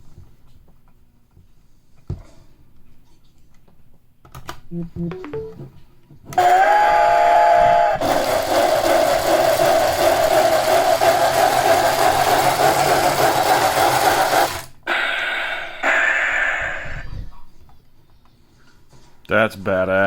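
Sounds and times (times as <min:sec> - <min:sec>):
toy train whistle: 0:06.4 - 0:08.4
rhythmic train chugging: 0:06.4 - 0:17.0.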